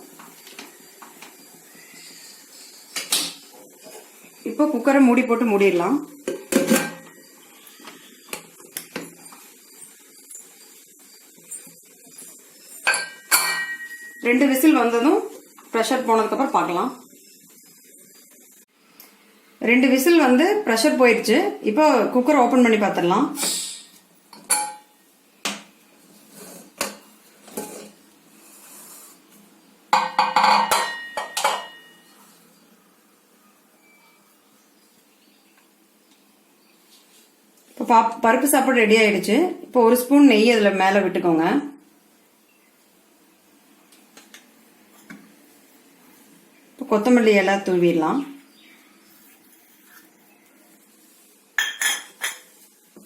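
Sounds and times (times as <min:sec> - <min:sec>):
metal lid clattering: 0:06.4 - 0:07.1
metal ringing: 0:24.5 - 0:24.9.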